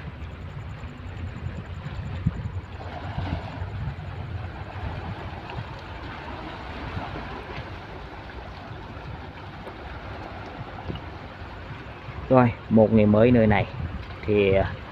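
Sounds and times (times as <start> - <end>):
wind buffeting microphone: 0.0 - 14.9
shallow sea water washing: 0.8 - 14.9.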